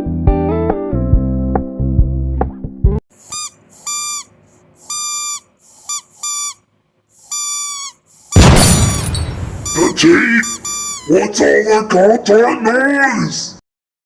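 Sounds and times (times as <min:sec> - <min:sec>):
toy trumpet hooting notes: 0:03.2 - 0:06.6, 0:07.2 - 0:11.1.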